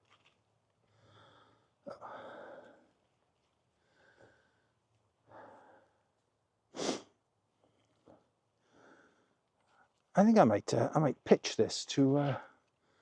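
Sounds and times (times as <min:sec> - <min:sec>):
man breathing: 0:00.8 - 0:03.1, 0:03.8 - 0:06.1, 0:08.6 - 0:09.8, 0:12.4 - 0:13.0
sharp sniff: 0:06.8 - 0:07.2.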